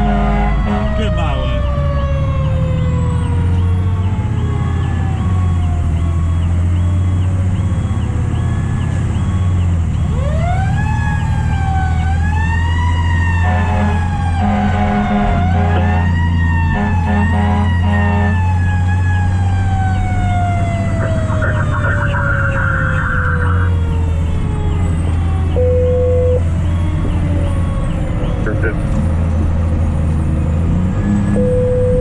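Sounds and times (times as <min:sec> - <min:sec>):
horn blasts: 0:00.0 - 0:01.2, 0:13.4 - 0:18.4
diesel engine drone: 0:00.0 - 0:32.0
fire truck siren wailing: 0:00.0 - 0:32.0.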